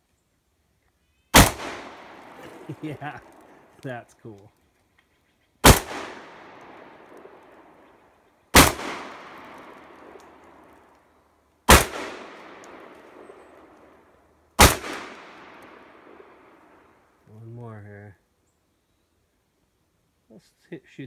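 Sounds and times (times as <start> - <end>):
shotgun shots echoing: 1.3 - 4.0, 5.6 - 7.9, 8.5 - 10.9, 11.7 - 14.0, 14.6 - 16.9.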